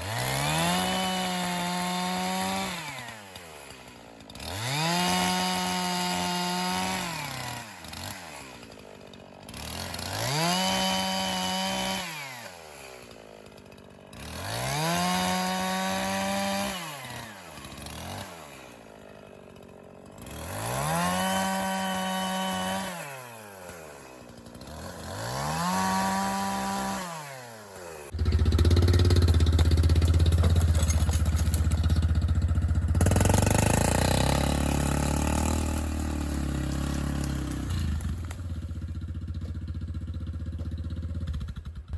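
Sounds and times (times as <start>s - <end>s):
chainsaw revving and cutting: 0.0s - 41.9s
deep engine running: 28.2s - 30.4s.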